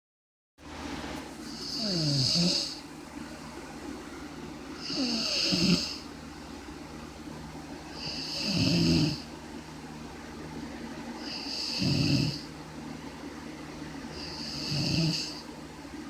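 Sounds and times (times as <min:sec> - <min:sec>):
steady low hum: 0:00.6 - 0:16.0
person snoring: 0:01.5 - 0:02.8, 0:04.8 - 0:06.1, 0:07.9 - 0:09.3, 0:11.2 - 0:12.5, 0:14.1 - 0:15.4.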